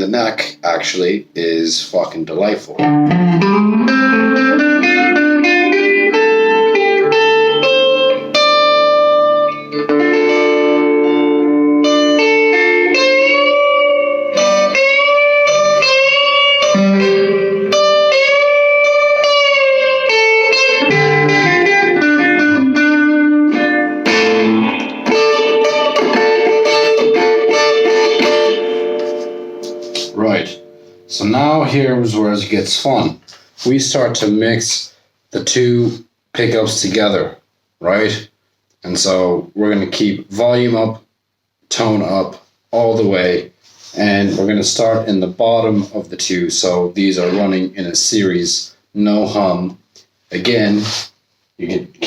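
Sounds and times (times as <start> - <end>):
distorted electric guitar lead: 2.7 - 32.2.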